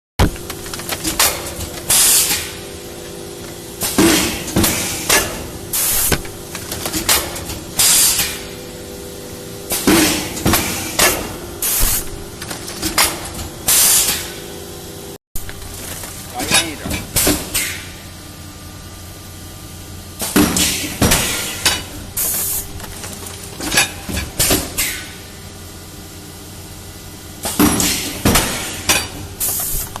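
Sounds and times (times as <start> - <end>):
motor hum: 0.2 - 7.8.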